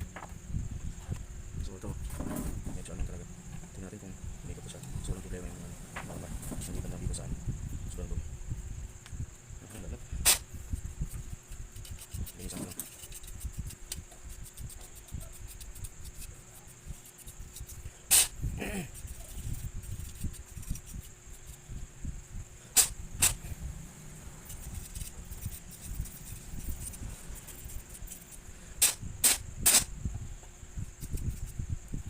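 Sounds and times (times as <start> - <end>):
hands rubbing and shuffling parts: 9.6 - 21.7, 24.3 - 29.9
sharp clicks: 22.8 - 23.4.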